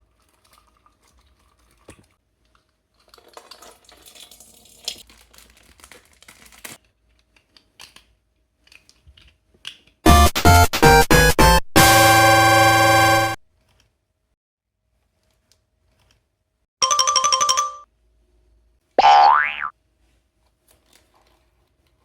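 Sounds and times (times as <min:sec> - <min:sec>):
crinkling handling noise: 0:05.0 - 0:10.0, 0:20.0 - 0:22.0
loud synthesizer music: 0:10.1 - 0:13.4.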